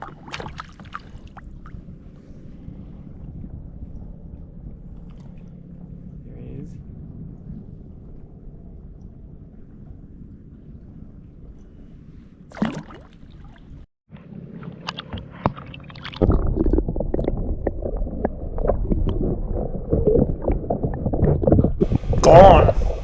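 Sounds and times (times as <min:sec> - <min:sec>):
water splashing and gurgling: 0:00.0 - 0:01.8, 0:12.5 - 0:13.8.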